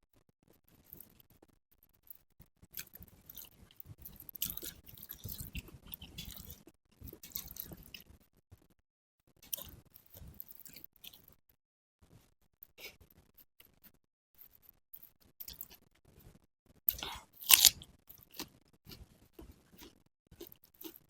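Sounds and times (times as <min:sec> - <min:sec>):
wet chewing of food: 0:02.7 - 0:08.1, 0:16.9 - 0:21.0.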